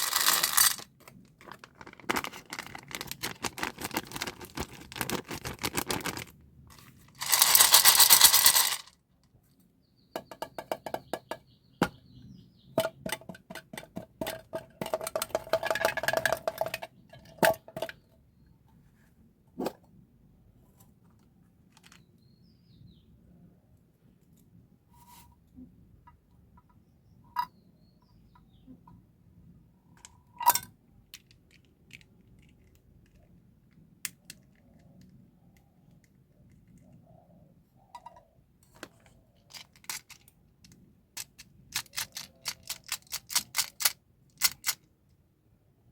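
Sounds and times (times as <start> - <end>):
packaging crackling and clicking: 0.0 - 6.3, 7.2 - 8.9
crinkling rustle: 0.0 - 8.9.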